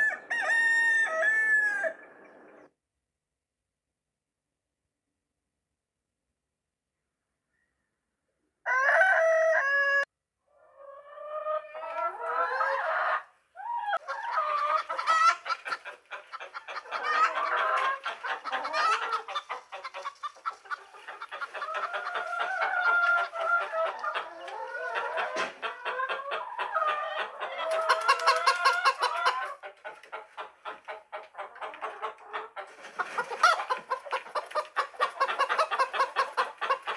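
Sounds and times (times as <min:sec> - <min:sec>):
chickens clucking: 0:10.5 - 0:36.9.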